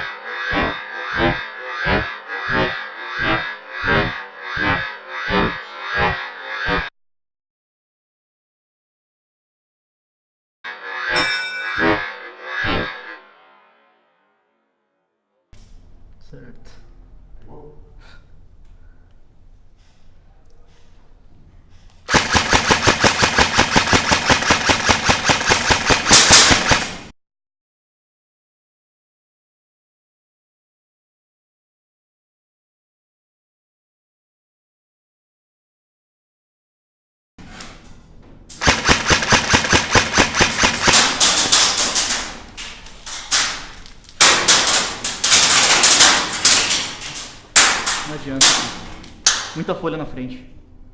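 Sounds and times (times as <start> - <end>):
airsoft rifle full-auto burst: 22.1 - 27.1, 38.6 - 42.2.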